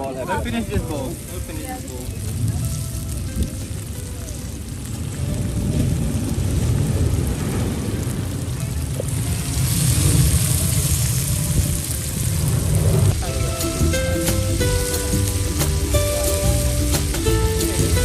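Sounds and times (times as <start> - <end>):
wind buffeting microphone: 0.0 - 18.0
music: 1.2 - 5.9, 13.1 - 18.0.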